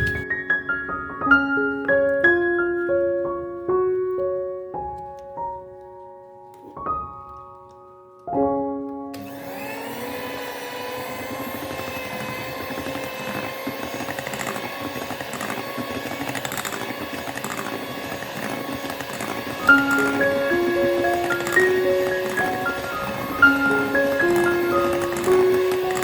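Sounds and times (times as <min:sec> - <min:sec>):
piano music: 0:00.0 - 0:14.2, 0:17.2 - 0:26.0
electric mixer running: 0:09.2 - 0:26.0.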